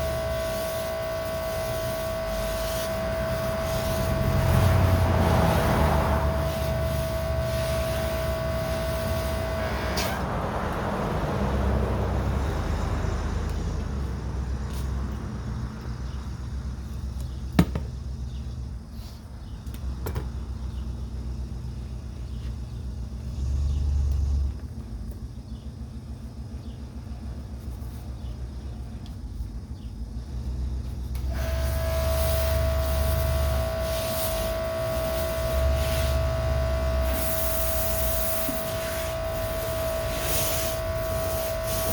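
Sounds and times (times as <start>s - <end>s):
pressure washer motor whining: 0.0s - 12.3s, 31.1s - 41.9s.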